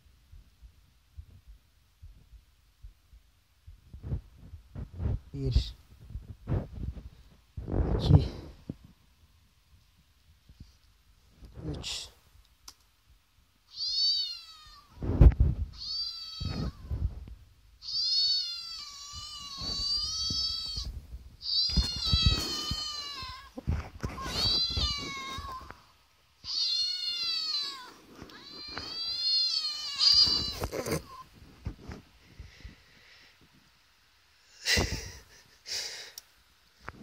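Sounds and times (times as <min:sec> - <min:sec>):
cat meowing: 0:13.7 - 0:15.0, 0:15.7 - 0:16.9, 0:17.8 - 0:25.8, 0:26.4 - 0:31.3.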